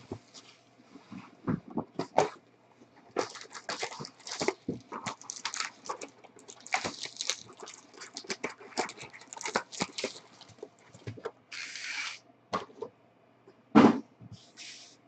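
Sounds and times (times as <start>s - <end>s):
packaging crinkling and rustling: 3.1s - 11.9s.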